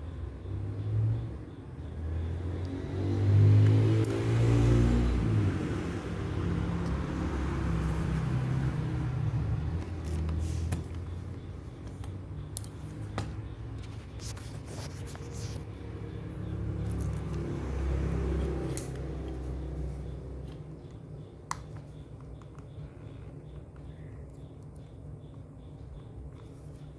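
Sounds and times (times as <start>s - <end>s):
vehicle engine rumbling: 0.0s - 23.9s
small sharp clicks and taps: 20.4s - 22.8s.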